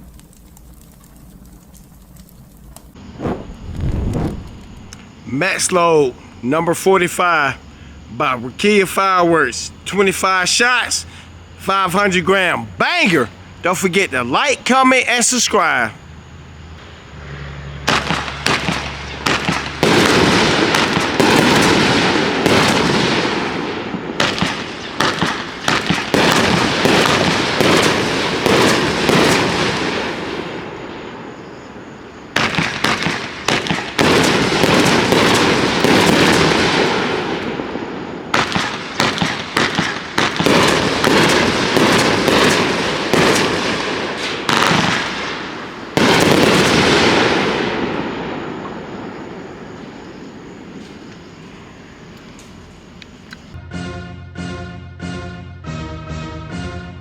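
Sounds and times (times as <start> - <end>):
firework shots and bangs: 2.9 - 5.2, 17.8 - 31.6, 32.3 - 49.5.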